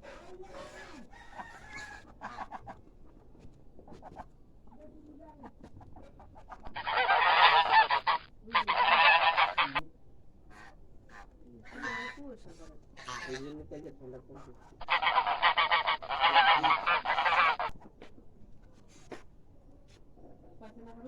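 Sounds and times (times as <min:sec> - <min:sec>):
geese honking: 0:00.0 - 0:02.8, 0:06.6 - 0:09.8, 0:10.5 - 0:12.2, 0:13.0 - 0:13.5, 0:14.8 - 0:17.8.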